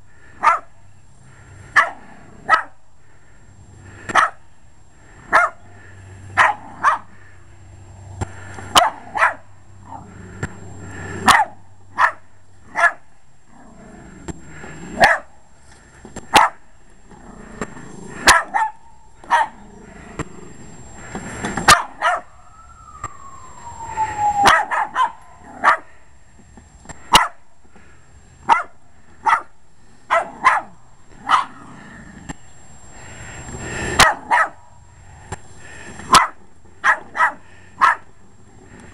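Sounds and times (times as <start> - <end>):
dog barking: 0.4 - 0.7, 1.8 - 2.8, 4.1 - 4.4, 5.3 - 5.6, 6.4 - 7.1, 8.8 - 9.4, 11.3 - 13.0, 15.0 - 15.3, 16.3 - 16.6, 18.3 - 19.6, 21.7 - 22.3, 24.5 - 25.9, 27.1 - 27.4, 28.5 - 29.5, 30.1 - 31.6, 34.0 - 34.6, 36.1 - 38.0.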